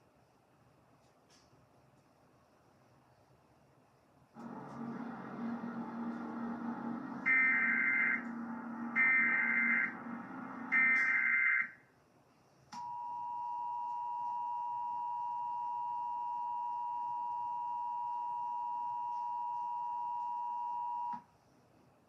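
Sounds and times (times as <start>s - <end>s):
low hum: 4.4s - 11.5s
digital header bursts: 4.5s - 11.6s
two-tone attention signal: 5.5s - 11.7s.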